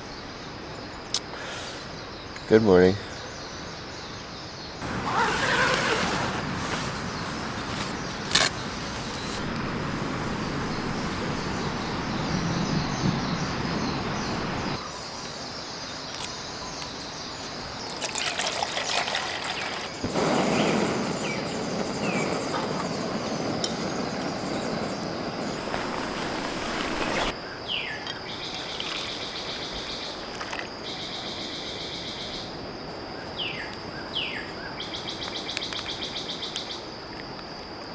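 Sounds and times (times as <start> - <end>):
high insect hum: 3.0 - 37.9
birds chirping: 4.8 - 32.3
rush of running water: 25.5 - 27.3.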